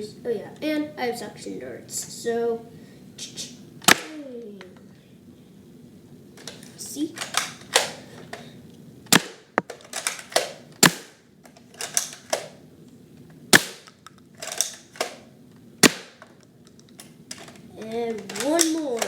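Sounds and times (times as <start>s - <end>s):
dart blaster snapping shots: 3.8s - 4.2s, 9.1s - 11.2s, 13.5s - 15.2s, 15.8s - 16.2s.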